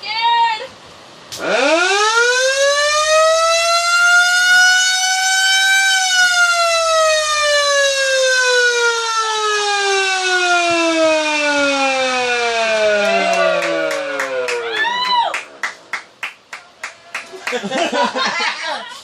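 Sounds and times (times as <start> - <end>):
fog-horn siren wailing: 1.4 - 15.4.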